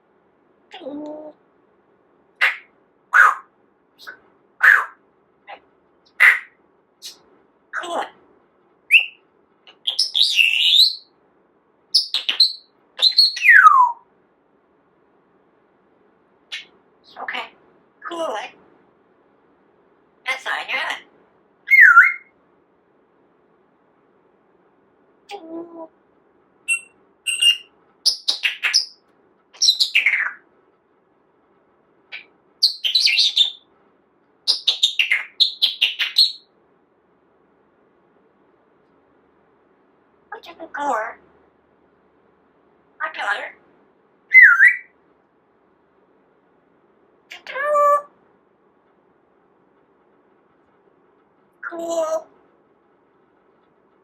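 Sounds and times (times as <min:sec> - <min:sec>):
parrot whistling and chirping: 0:06.1 - 0:07.2, 0:08.9 - 0:09.2, 0:09.8 - 0:11.1, 0:12.0 - 0:14.0, 0:21.7 - 0:22.3, 0:26.7 - 0:29.0, 0:29.6 - 0:30.4, 0:32.1 - 0:33.6, 0:34.5 - 0:36.5, 0:44.3 - 0:44.9.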